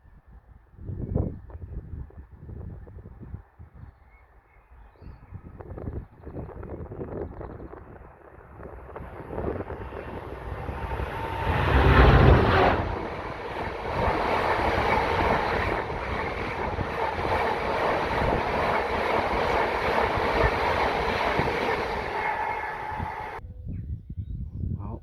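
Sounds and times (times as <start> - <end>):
freight train passing: 6.4 - 23.4
wagons rolling on rails: 8.4 - 23.4.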